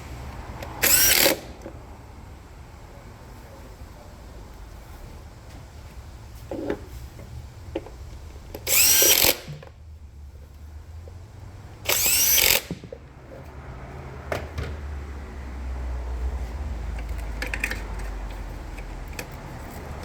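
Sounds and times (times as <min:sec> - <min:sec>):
cordless drill whine: 0:00.8 - 0:01.4, 0:08.6 - 0:09.6, 0:11.9 - 0:12.8.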